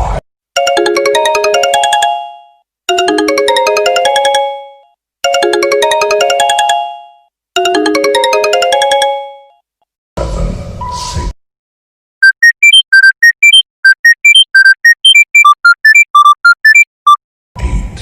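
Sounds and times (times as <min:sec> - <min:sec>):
different ringtone: 0:00.6 - 0:09.6, 0:12.2 - 0:17.2
electronic ringtone melody: 0:00.6 - 0:09.6, 0:12.2 - 0:17.0.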